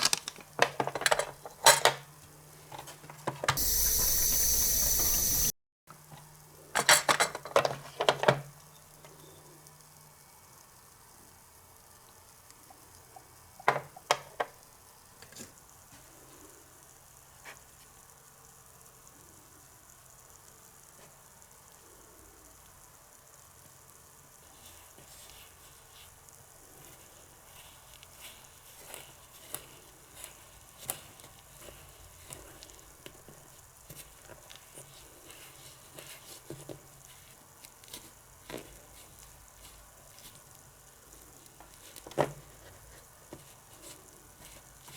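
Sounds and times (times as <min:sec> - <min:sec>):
faint frying sizzle: 0:01.4 - 0:44.9
small crackling ticks: 0:08.0 - 0:44.9.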